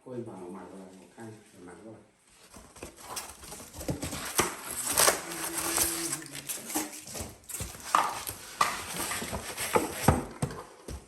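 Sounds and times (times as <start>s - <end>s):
objects knocking and clicking: 6.4s - 11.0s.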